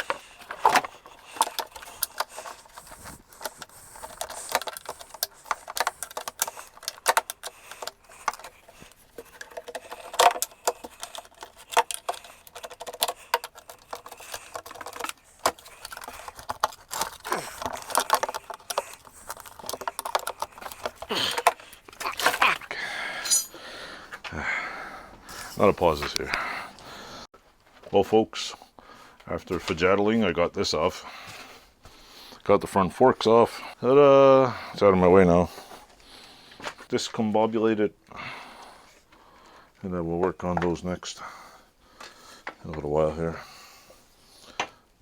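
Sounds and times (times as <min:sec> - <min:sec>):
hand tools and metal parts clinking: 0:00.0 - 0:24.3, 0:25.3 - 0:26.5.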